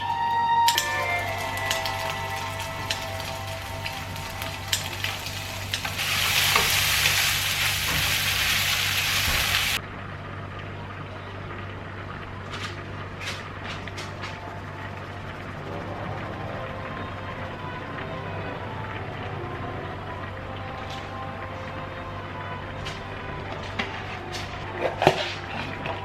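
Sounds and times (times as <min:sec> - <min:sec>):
food sizzling in frying pan: 0:00.8 - 0:09.8.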